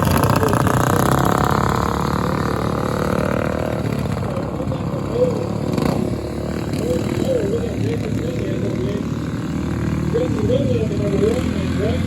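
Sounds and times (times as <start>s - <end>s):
lawn mower engines racing: 0.0s - 12.0s.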